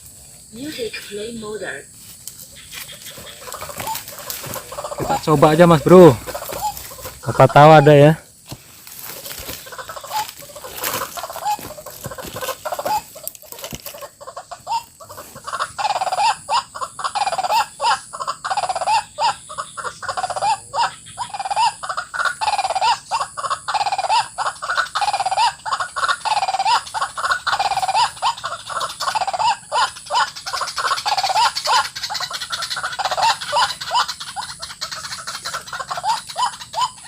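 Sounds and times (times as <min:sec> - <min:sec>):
waterhen calling: 0:02.4 - 0:08.2, 0:08.9 - 0:37.0
rustling and clicks: 0:08.5 - 0:14.1.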